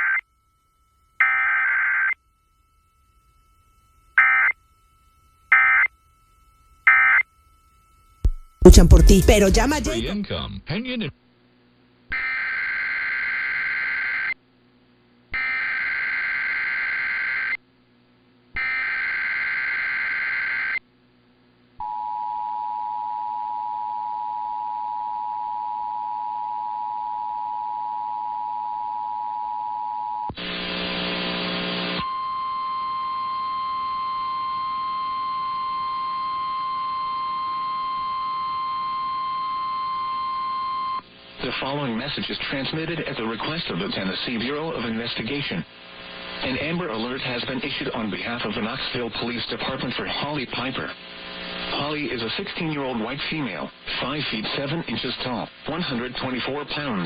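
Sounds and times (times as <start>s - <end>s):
screeching digital data bursts: 0.0s - 0.2s, 6.8s - 7.3s, 12.1s - 14.4s, 15.4s - 17.6s, 18.6s - 20.8s
noise burst: 8.3s - 10.2s
steady alert tone: 8.3s - 10.2s
two-tone alert signal: 8.3s - 10.2s.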